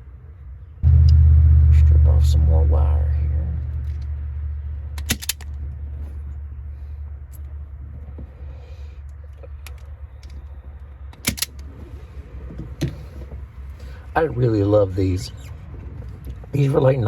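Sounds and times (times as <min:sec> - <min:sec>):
steady low rumble: 0:00.0 - 0:17.0
wire strippers clicking: 0:04.9 - 0:06.1, 0:09.1 - 0:11.8.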